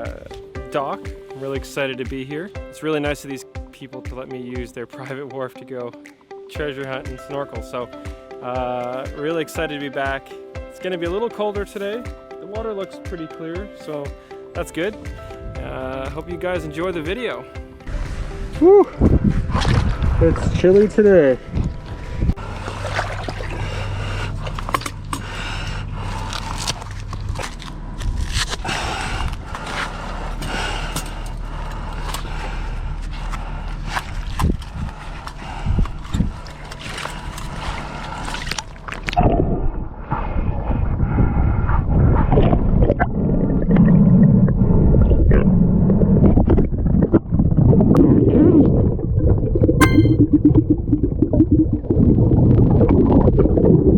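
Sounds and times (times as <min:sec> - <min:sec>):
muffled water sloshing and gurgling: 0:17.6 - 0:53.9
clicks and crackles underwater: 0:24.4 - 0:25.3, 0:26.1 - 0:29.7, 0:30.4 - 0:39.6, 0:42.2 - 0:49.8, 0:51.0 - 0:53.9.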